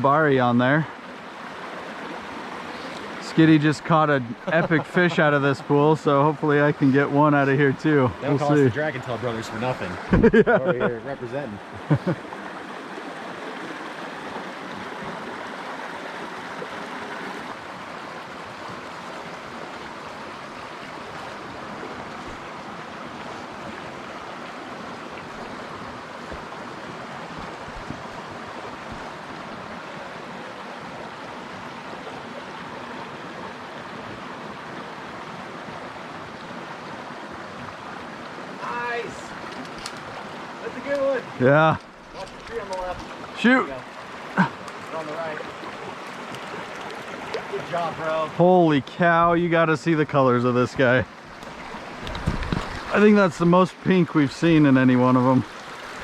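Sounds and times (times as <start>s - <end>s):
creek water running: 0.0s - 56.0s.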